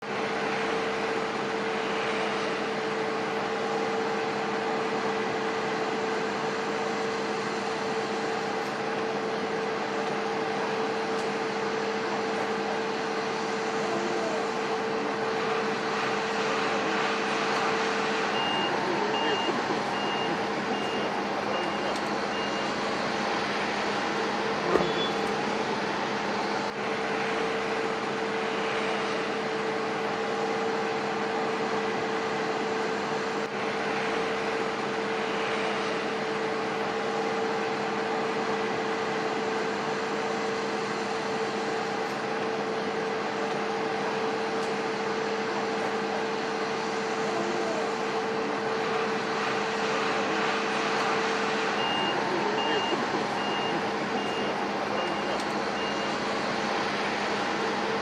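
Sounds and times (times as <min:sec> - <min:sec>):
vehicle engines droning: 0:00.0 - 0:58.0
high beeps: 0:18.3 - 0:22.7, 0:51.8 - 0:56.1.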